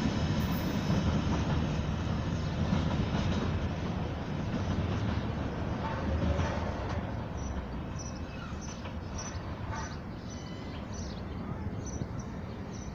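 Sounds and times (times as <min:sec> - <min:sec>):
freight train rumble: 0:00.0 - 0:12.9
small birds chirping: 0:07.2 - 0:12.9.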